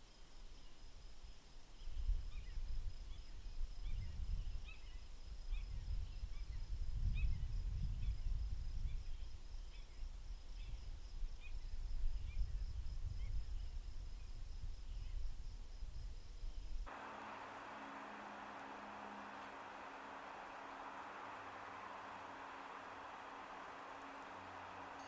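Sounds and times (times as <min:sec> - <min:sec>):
steady hiss with low hum: 0:13.9 - 0:25.0
small birds chirping: 0:16.9 - 0:25.0.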